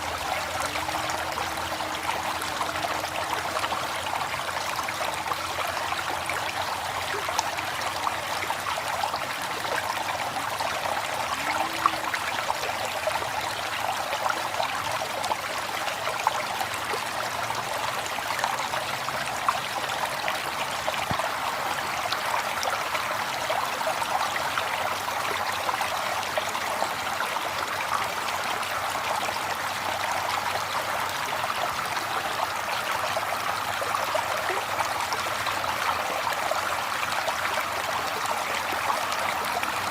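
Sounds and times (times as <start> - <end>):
river water flowing: 0.0 - 39.9.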